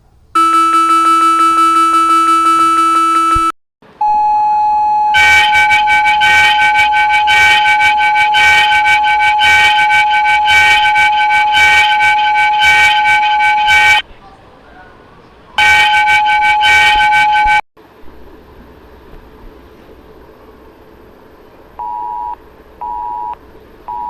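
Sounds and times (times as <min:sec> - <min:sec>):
harsh buzzing alarm tone: 0:00.4 - 0:14.0, 0:15.6 - 0:17.6
steady high-pitched tone: 0:00.4 - 0:14.0, 0:15.6 - 0:17.6.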